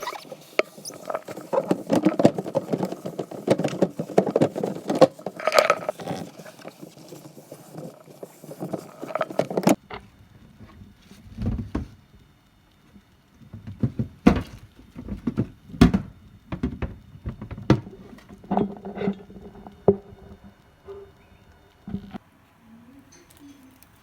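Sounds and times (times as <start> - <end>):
household objects knocking and clattering: 0.6 - 9.8, 13.5 - 20.2.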